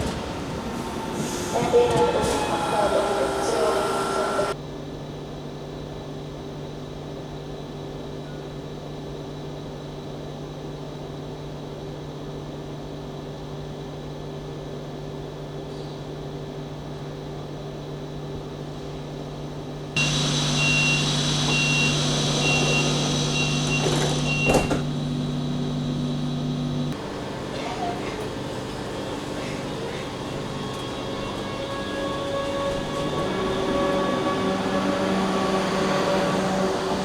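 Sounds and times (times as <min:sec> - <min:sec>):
electric train equipment humming: 0:00.0 - 0:04.6, 0:19.4 - 0:37.0
high beeps: 0:20.0 - 0:24.7.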